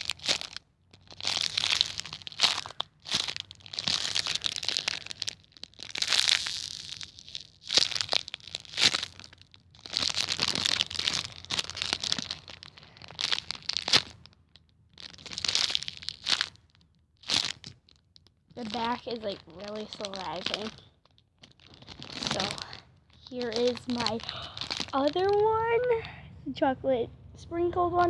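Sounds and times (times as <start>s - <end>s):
foam toy crinkling and rustling: 0.0s - 26.1s.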